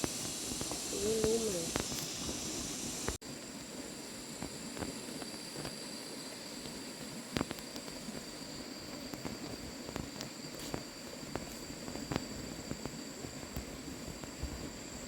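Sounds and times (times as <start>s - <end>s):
background hiss with high tone: 0.0s - 15.0s.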